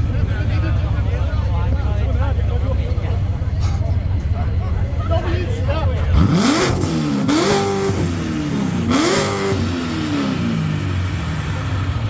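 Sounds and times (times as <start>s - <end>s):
sports car engine revving: 6.0s - 12.0s.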